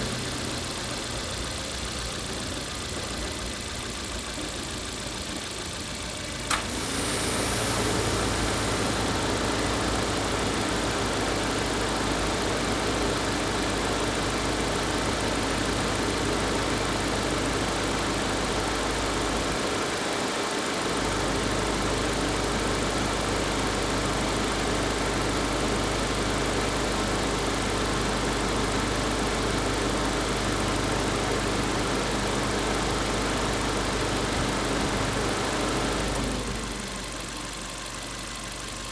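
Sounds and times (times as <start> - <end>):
car engine idling: 0.0 - 30.5
air conditioning blower rushing: 6.5 - 13.4.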